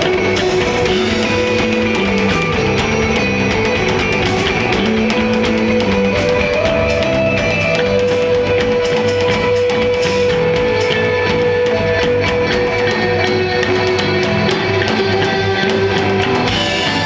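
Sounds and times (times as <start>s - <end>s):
drum kit cymbals: 0.0s - 11.3s, 16.5s - 17.0s
bass guitar: 0.0s - 17.0s
electric guitar: 0.0s - 17.0s.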